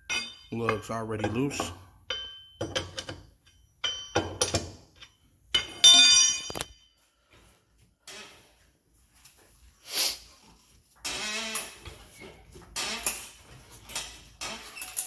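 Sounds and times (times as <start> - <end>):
metal tools clinking: 0.0 - 7.0.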